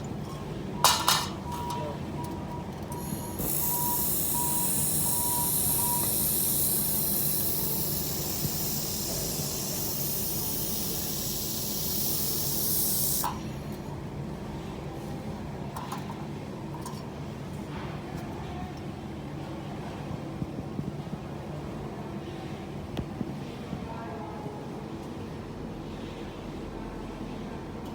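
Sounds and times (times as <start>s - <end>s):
laser welding hiss: 3.0s - 13.7s.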